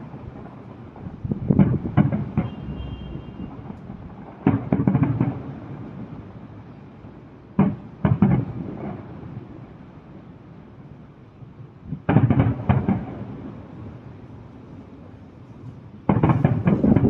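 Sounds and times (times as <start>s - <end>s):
firecrackers banging: 0.0s - 6.8s, 7.5s - 9.6s, 11.9s - 14.2s, 15.7s - 17.0s.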